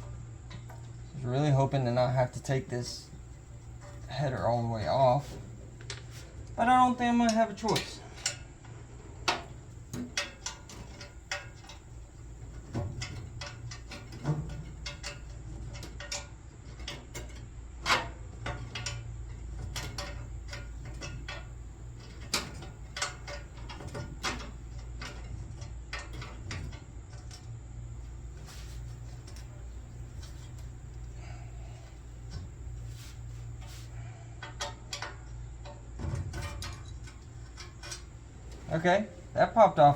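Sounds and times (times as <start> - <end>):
steady low hum: 0.0 - 39.9
hand tools clicking on metal: 7.2 - 8.5.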